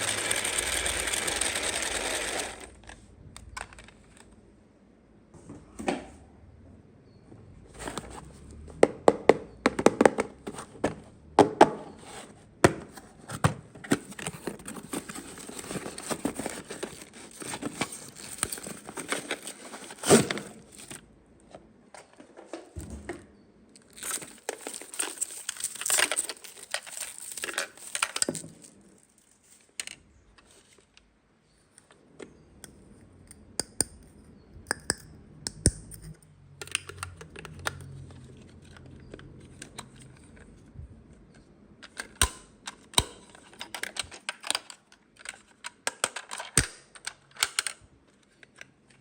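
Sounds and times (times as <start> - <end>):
packaging crinkling and tearing: 13.9 - 21.0, 23.8 - 29.8.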